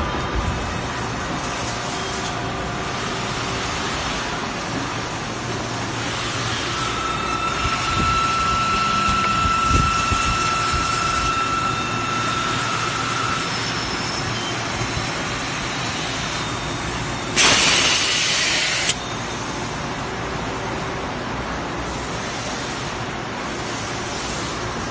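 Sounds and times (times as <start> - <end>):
factory machinery running: 0.0 - 24.9
thin high whine: 5.4 - 19.6
loud hiss: 17.3 - 19.0.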